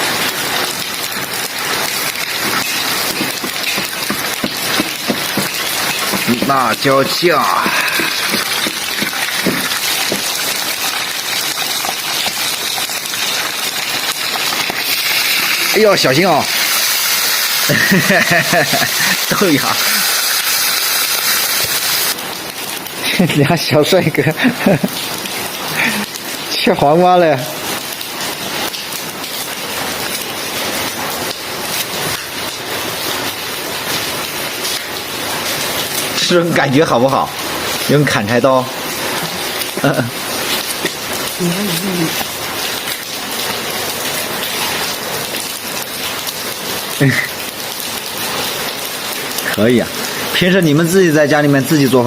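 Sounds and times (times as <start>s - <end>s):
oil sizzling in a hot pan: 0.0s - 22.2s
heavy rain hissing: 0.0s - 52.0s
cooking utensil knocking: 7.7s - 10.3s.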